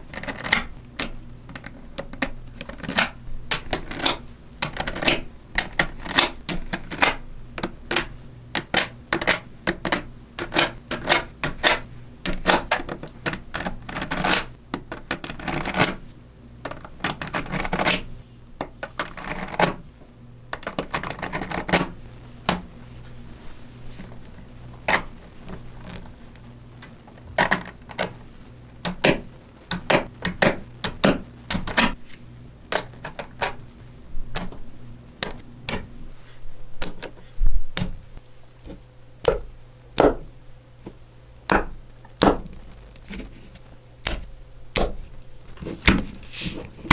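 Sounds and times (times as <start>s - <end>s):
magnetic balls clicking together: 0.0s - 16.0s, 16.6s - 19.8s, 20.5s - 22.8s, 26.8s - 28.2s, 28.8s - 32.0s, 32.7s - 33.7s, 34.3s - 36.0s.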